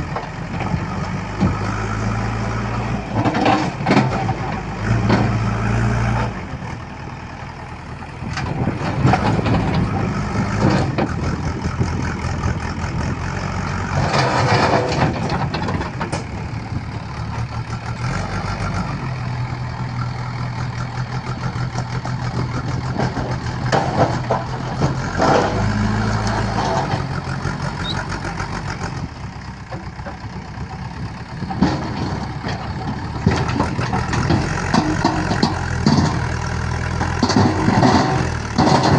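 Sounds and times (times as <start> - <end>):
knocks and clanks: 3.1 - 5.4, 8.3 - 11.6, 13.9 - 16.6, 22.4 - 27.6, 31.4 - 38.9
diesel engine idling: 4.3 - 14.0, 15.5 - 38.9.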